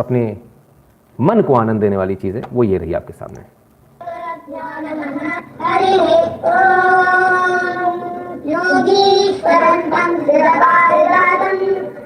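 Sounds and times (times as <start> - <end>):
child singing held notes: 4.0 - 12.0.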